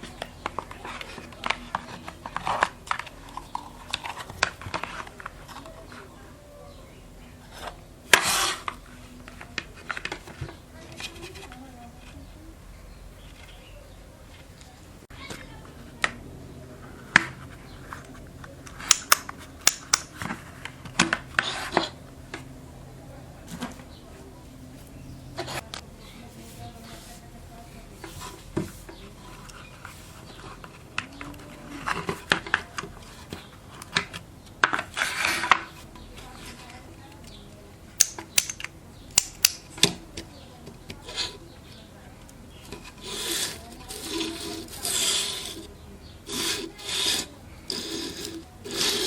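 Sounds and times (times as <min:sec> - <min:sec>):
rustling scrape: 0:07.5 - 0:12.3, 0:20.2 - 0:22.0, 0:25.4 - 0:34.0, 0:34.7 - 0:36.8, 0:41.0 - 0:41.9, 0:42.5 - 0:49.0
snips and clicks on plastic: 0:18.7 - 0:21.9, 0:38.0 - 0:41.1
short scrape: 0:42.9 - 0:49.0.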